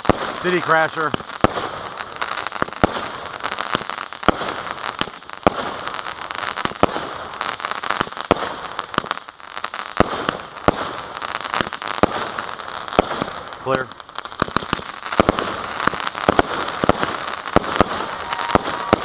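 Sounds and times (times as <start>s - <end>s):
fireworks bangs: 0.0s - 19.0s
fireworks crackling: 0.0s - 19.0s.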